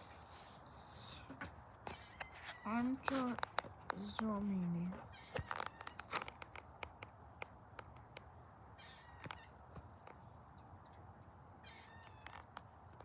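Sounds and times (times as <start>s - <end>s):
faint clicks: 5.3s - 8.3s.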